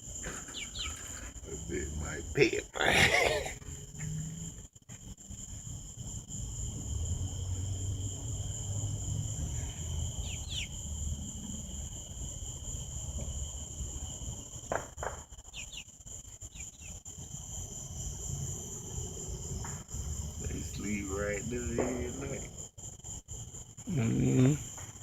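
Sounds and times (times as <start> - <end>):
high chorus of insects: 0.0 - 25.0.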